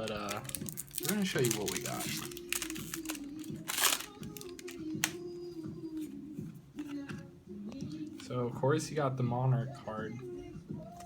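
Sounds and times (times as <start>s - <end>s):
card pack rustling and crinkling: 0.0s - 5.2s.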